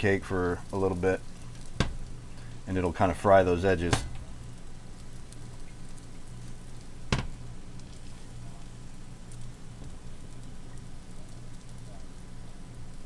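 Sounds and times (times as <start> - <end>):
pancake sizzling in fat: 0.0 - 13.0.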